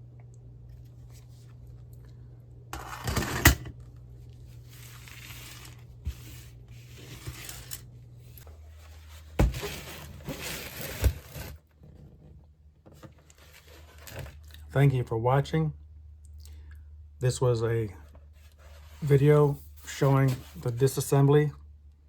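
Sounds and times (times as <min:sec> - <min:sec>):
steady low hum: 0:00.0 - 0:22.0
scraping and rustling: 0:04.4 - 0:14.5, 0:18.2 - 0:20.7.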